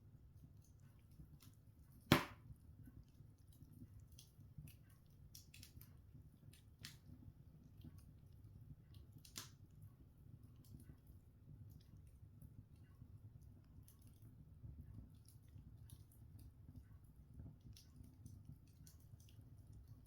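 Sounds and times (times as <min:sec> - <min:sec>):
fire crackling: 0:00.6 - 0:02.6, 0:03.2 - 0:12.6
sharp pop of fire: 0:02.1 - 0:02.4.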